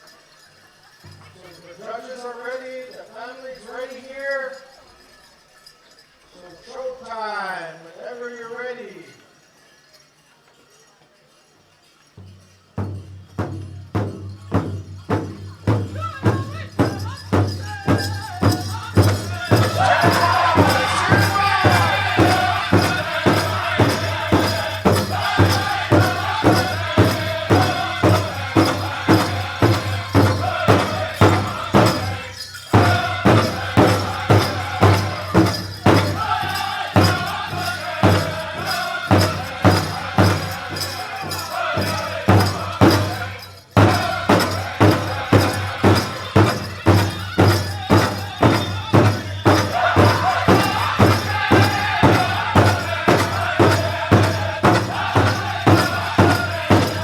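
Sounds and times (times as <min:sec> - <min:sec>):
big drum beating: 0:14.0 - 0:43.2, 0:43.8 - 0:57.0
group singing in high voices: 0:17.0 - 0:57.0.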